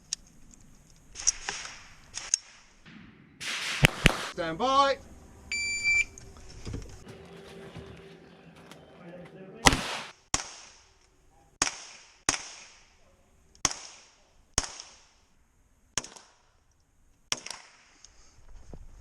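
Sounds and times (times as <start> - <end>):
gunshots with echo: 2.9 - 4.4, 9.6 - 10.8.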